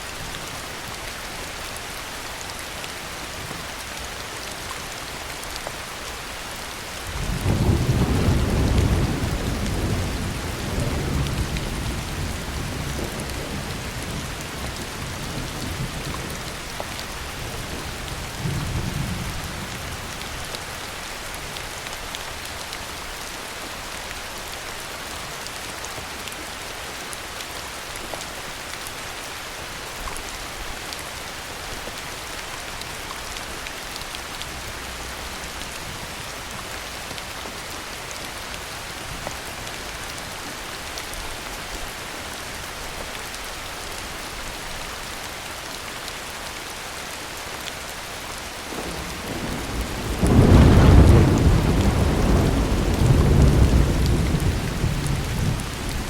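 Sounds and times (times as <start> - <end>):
heavy rain: 0.0 - 56.0
thunder rumbling: 48.7 - 56.0.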